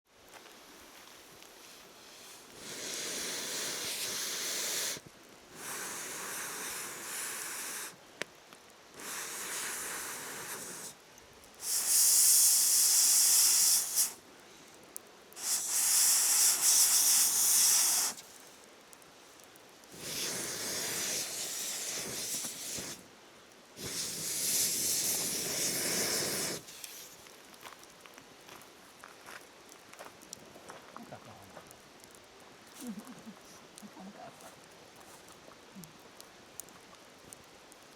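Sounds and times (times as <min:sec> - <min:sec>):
bursts of hissing rush: 0:02.2 - 0:08.0, 0:08.9 - 0:11.0, 0:11.6 - 0:14.2, 0:15.3 - 0:18.5, 0:19.9 - 0:23.1, 0:23.8 - 0:27.2.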